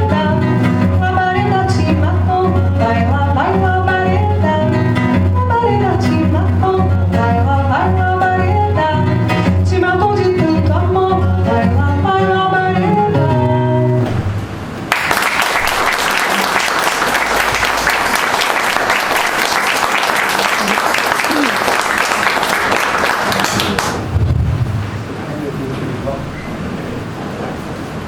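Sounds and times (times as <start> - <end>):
person singing: 0.0 - 14.1
acoustic guitar: 0.0 - 15.1
audience applause: 14.9 - 24.1.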